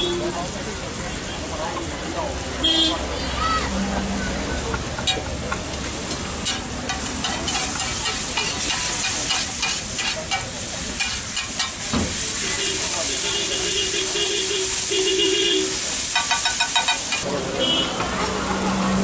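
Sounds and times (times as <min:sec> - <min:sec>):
eggs sizzling in a pan: 0:03.7 - 0:18.9
metal spatula scraping pan: 0:06.0 - 0:11.8.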